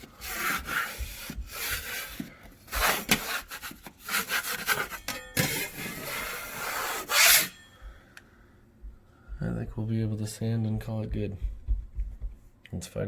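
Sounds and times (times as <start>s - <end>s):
putty knife scraping drywall: 0.0s - 7.6s.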